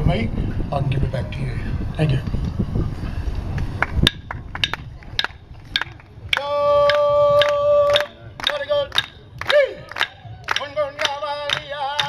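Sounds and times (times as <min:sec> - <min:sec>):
sharp knocks in a steady beat: 0:04.0 - 0:12.0
man singing: 0:06.4 - 0:09.9, 0:10.6 - 0:12.0.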